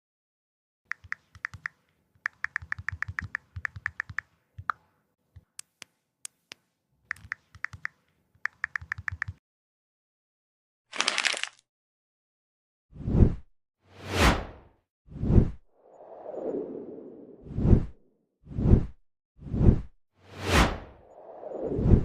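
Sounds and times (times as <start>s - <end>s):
computer keyboard typing: 0.9s - 4.3s, 7.1s - 9.4s.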